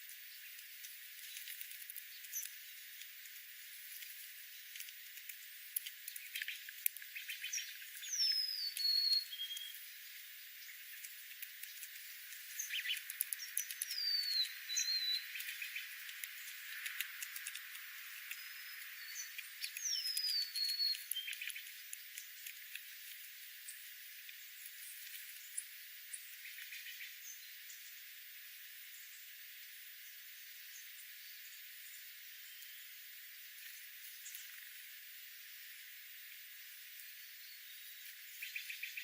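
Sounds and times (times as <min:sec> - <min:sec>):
faint clicks and crackles: 0:00.1 - 0:09.9, 0:10.6 - 0:14.6, 0:15.2 - 0:25.4
small bird whistling call: 0:07.2 - 0:09.9, 0:12.6 - 0:15.8, 0:18.4 - 0:21.6.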